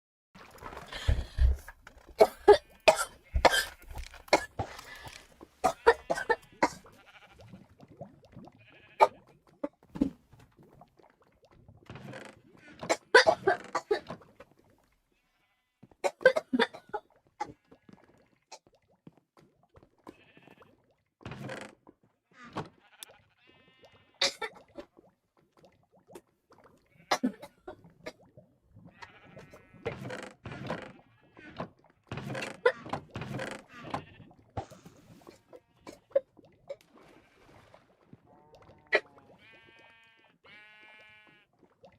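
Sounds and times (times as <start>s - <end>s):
girl coughing: 2.2s - 4.6s.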